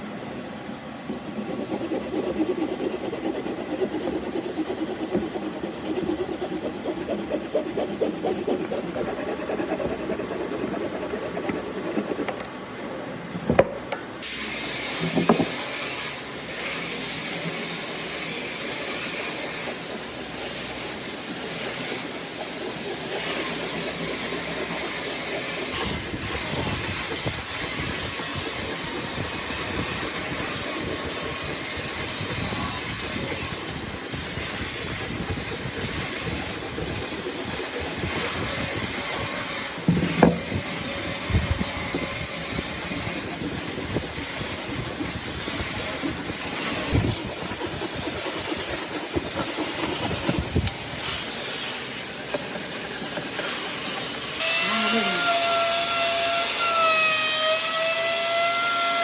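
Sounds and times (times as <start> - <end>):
power tool rasping wood: 1.0 - 12.5, 13.6 - 59.0
sharp knocks: 39.8 - 40.8.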